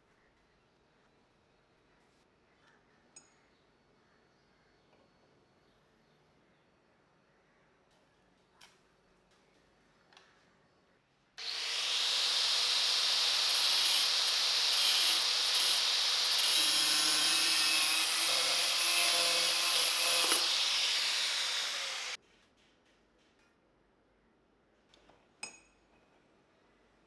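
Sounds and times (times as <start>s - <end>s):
angle grinder machine running: 11.4s - 22.2s.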